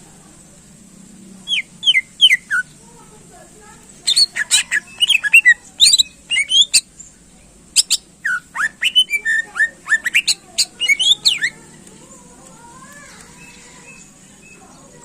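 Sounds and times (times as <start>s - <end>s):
bird singing whistled notes: 1.5s - 2.8s, 4.1s - 7.1s, 7.8s - 11.6s, 13.4s - 14.8s.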